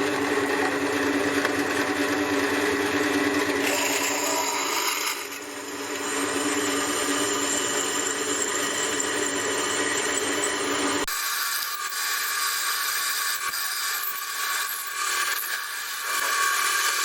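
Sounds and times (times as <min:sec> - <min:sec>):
drill press motor hum: 0:00.0 - 0:11.1
drill bit scraping metal: 0:00.0 - 0:17.0.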